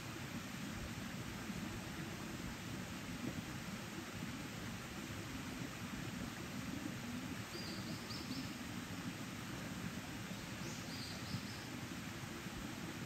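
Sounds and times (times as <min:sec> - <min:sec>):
mountain stream flowing: 0:00.0 - 0:13.0
faint high bird chirps: 0:10.6 - 0:11.7.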